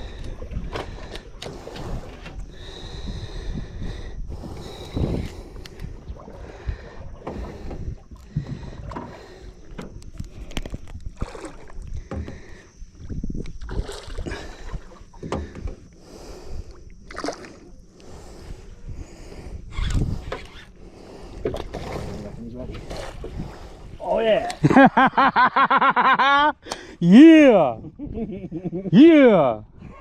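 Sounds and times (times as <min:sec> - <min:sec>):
water sloshing around boat: 0:00.0 - 0:25.5.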